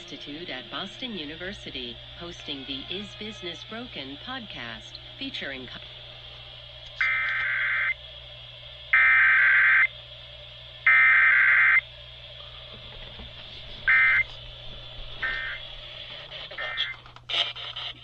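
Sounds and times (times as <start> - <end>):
faint steady hum: 0.0 - 18.0
buzzy digital data bursts: 7.0 - 8.0, 8.9 - 9.9, 10.9 - 11.8, 13.8 - 14.3, 15.2 - 17.0.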